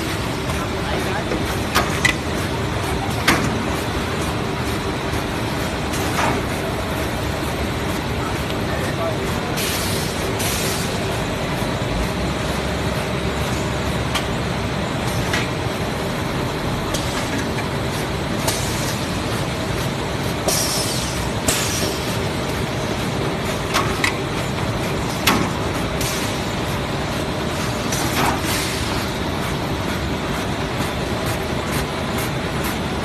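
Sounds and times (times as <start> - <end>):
sharp machine clacks and hisses: 0.0 - 33.0.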